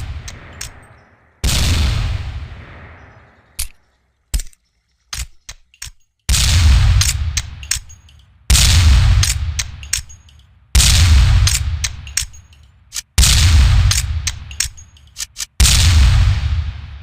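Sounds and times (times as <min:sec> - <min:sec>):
rifle shots: 0:00.0 - 0:04.5, 0:06.3 - 0:10.2, 0:10.8 - 0:12.4, 0:13.2 - 0:14.8, 0:15.6 - 0:16.8.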